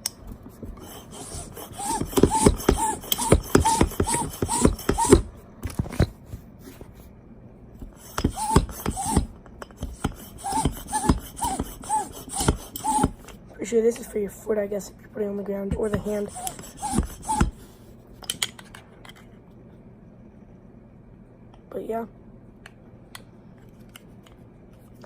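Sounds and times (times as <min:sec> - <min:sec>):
bicycle hand pump squeaking: 0:00.8 - 0:05.3, 0:08.0 - 0:09.3, 0:09.9 - 0:13.2, 0:16.0 - 0:17.6.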